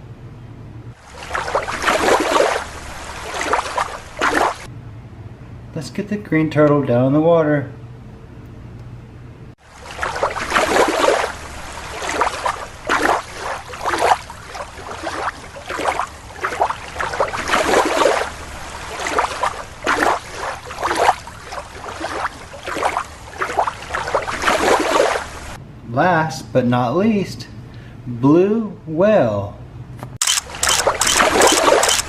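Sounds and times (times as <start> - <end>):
water sloshing and splashing: 0.9 - 4.7, 9.6 - 25.6, 30.2 - 32.0.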